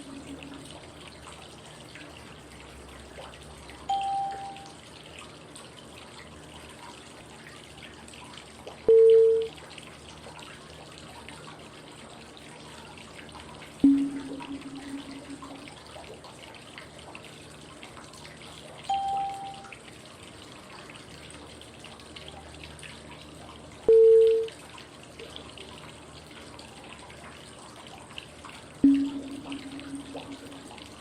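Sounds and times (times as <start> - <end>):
running water: 0.0 - 31.0
short cue tones: 3.9 - 4.7, 18.9 - 19.7.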